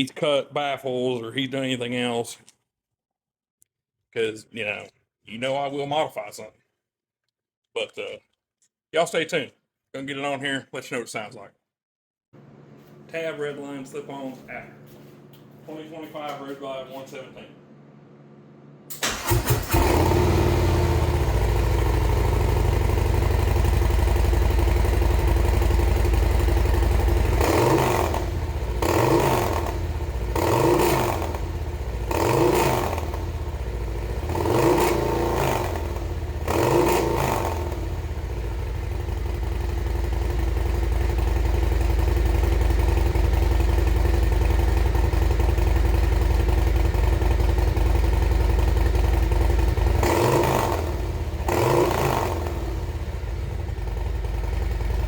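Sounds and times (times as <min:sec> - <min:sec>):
motorcycle throttle blips: 0:14.8 - 0:55.0
motorcycle engine idling: 0:17.6 - 0:55.0.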